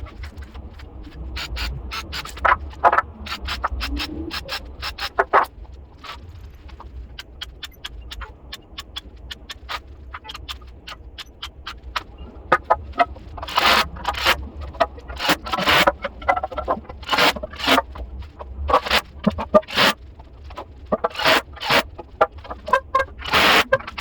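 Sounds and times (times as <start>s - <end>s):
low steady hum: 0.0s - 24.0s
wood scraping by hand: 9.3s - 24.0s.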